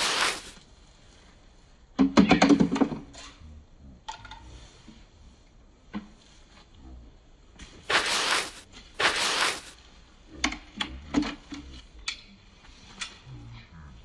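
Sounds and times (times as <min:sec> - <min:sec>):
hissing swishes: 0:00.0 - 0:00.6, 0:07.9 - 0:09.8.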